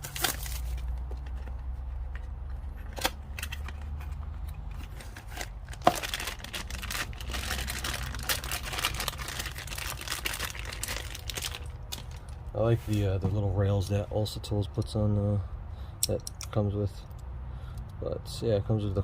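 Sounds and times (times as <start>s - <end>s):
packaging crinkling and rustling: 0.0s - 1.8s, 2.9s - 13.0s.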